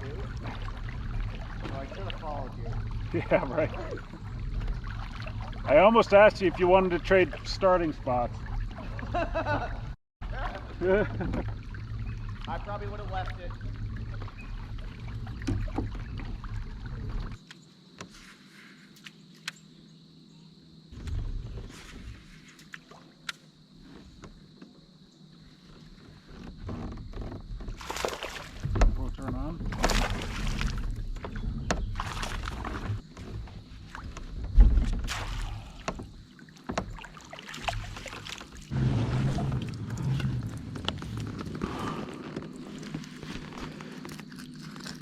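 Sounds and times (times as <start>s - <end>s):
low rumble: 0.0s - 17.4s, 38.7s - 42.7s
loud low rumble: 38.7s - 40.8s.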